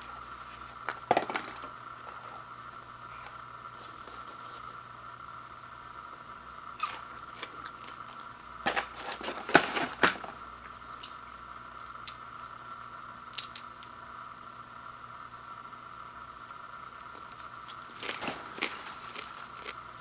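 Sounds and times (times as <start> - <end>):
packaging crinkling and rustling: 6.9 - 10.4, 17.8 - 19.8.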